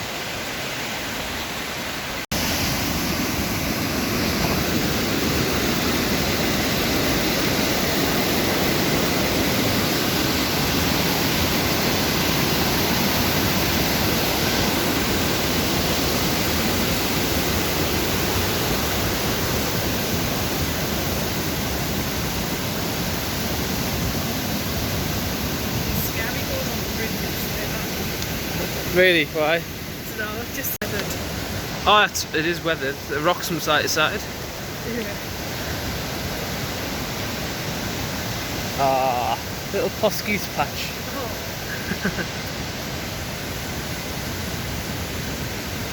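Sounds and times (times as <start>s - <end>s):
river rushing: 0.0s - 45.9s.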